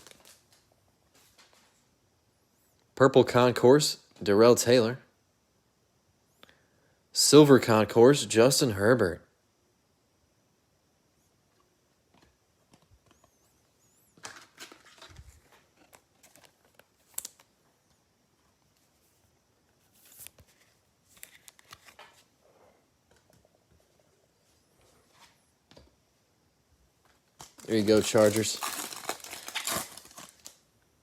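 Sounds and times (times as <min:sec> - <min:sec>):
wrappers rustling and crinkling: 0:00.0 - 0:01.7, 0:27.4 - 0:30.6.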